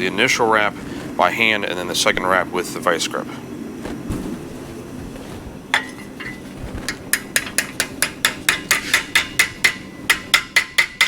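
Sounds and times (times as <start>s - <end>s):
hammer striking steel: 7.1s - 11.0s.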